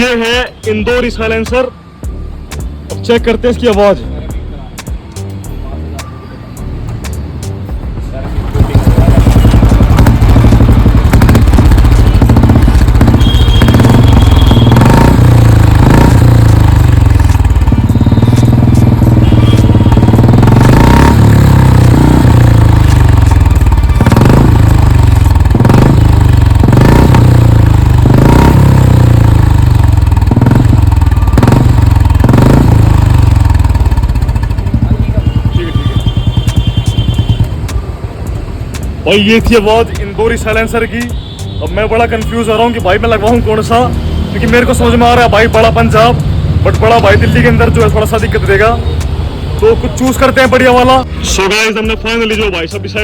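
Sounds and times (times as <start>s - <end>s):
motorcycle engine throttle blips: 8.5s - 38.1s.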